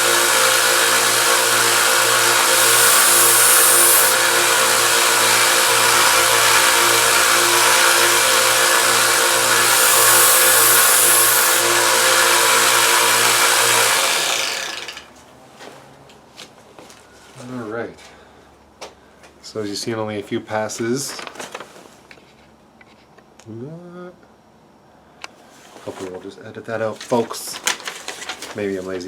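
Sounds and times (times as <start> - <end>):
belt sander grinding knife blade: 0.0 - 15.1
belt sander motor winding down: 0.0 - 15.1.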